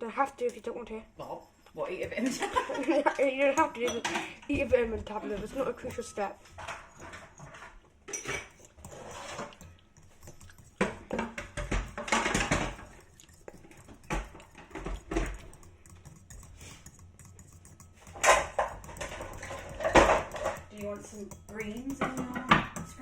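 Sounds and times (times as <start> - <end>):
kitchen utensils and dishes clinking: 0.0 - 23.0.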